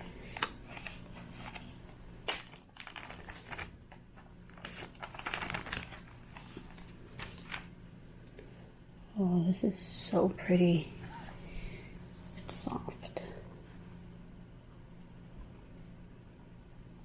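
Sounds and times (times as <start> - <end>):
packaging rustling and crinkling: 0.1 - 7.8.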